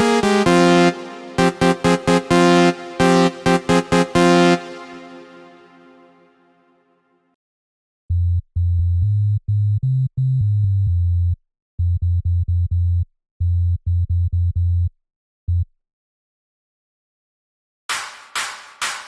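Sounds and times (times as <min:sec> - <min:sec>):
deep synth bass riff: 0:00.0 - 0:06.0.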